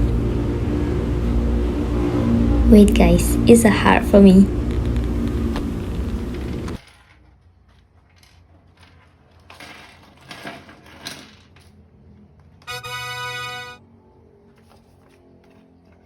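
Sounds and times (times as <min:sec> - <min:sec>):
steady musical note: 0:00.0 - 0:06.8, 0:12.7 - 0:13.8.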